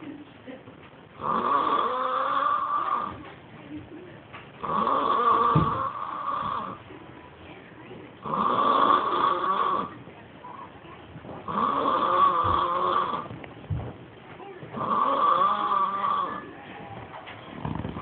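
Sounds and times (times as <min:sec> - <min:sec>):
loud snoring: 0:01.2 - 0:03.2, 0:04.6 - 0:06.8, 0:08.2 - 0:10.0, 0:11.4 - 0:13.3, 0:14.8 - 0:16.4.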